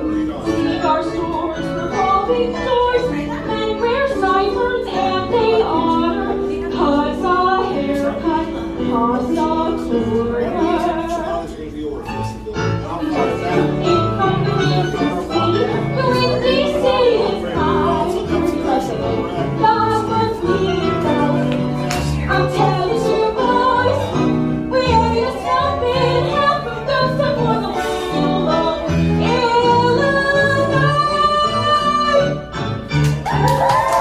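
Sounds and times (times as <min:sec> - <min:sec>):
band accompaniment with bass: 0:08.0 - 0:34.0
person singing: 0:13.0 - 0:32.5.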